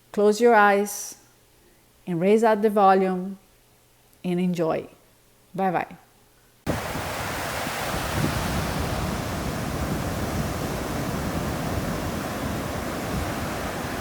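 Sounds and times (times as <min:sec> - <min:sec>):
water rushing: 0:06.7 - 0:14.0.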